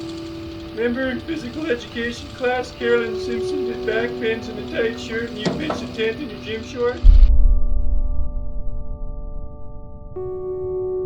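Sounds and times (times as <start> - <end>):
sustained chords music: 0.0 - 11.0.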